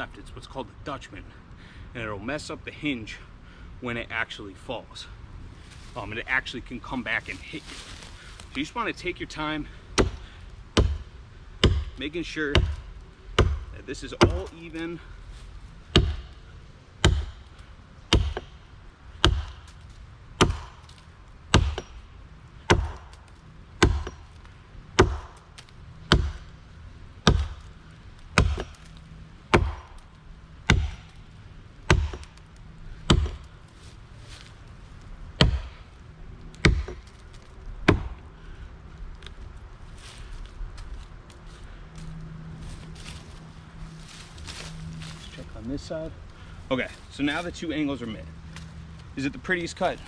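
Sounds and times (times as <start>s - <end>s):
axe chopping wood: 10.0s - 12.8s, 13.4s - 14.6s, 15.9s - 16.3s, 17.0s - 17.4s, 18.1s - 18.6s, 19.2s - 19.8s, 20.4s - 22.0s, 22.7s - 24.4s, 25.0s - 26.5s, 27.2s - 27.6s, 28.4s - 28.9s, 29.5s - 30.0s, 30.7s - 31.2s, 31.9s - 32.4s, 33.1s - 33.5s, 35.4s - 35.8s, 36.5s - 38.2s.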